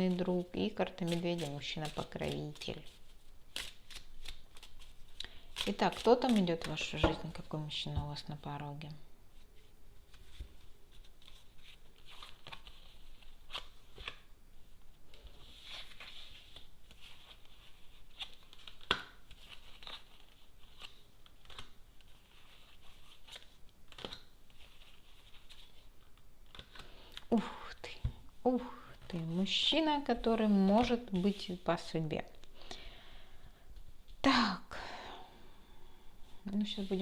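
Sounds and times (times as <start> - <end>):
cards shuffling by hand: 0.0 - 7.4, 9.6 - 14.3, 15.1 - 27.3.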